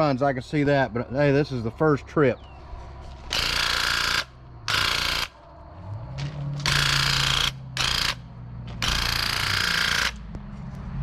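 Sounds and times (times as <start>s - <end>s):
paint sprayer pump buzzing: 3.3s - 5.3s, 6.6s - 10.2s.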